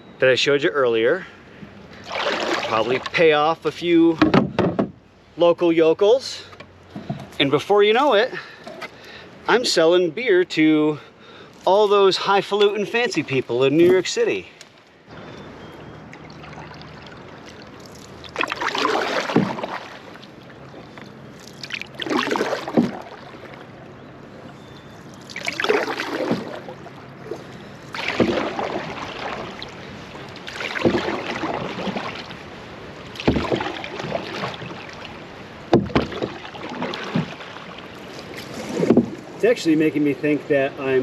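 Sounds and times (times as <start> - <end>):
paddle splashing through water: 1.6 - 3.4, 15.1 - 39.7.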